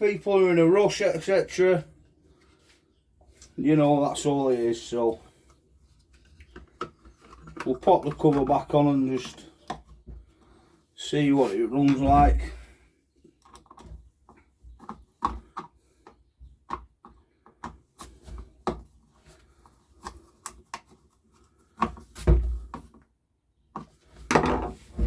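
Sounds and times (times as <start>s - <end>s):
plastic cover clicks and knocks: 23.8s - 25.0s.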